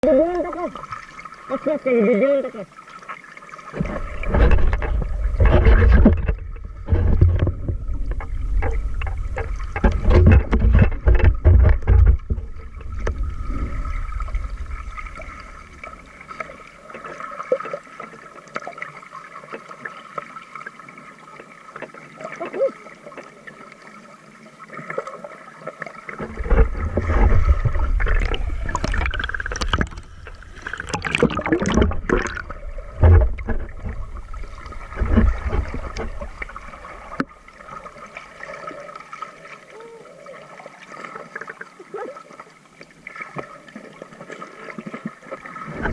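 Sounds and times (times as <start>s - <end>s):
sea water splashing: 0.0s - 45.9s
low rumbling: 4.0s - 16.6s, 26.3s - 37.4s.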